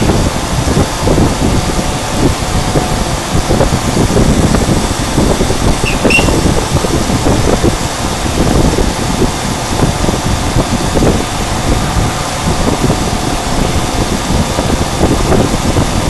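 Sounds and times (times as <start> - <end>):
short high chirps: 5.8 - 6.4.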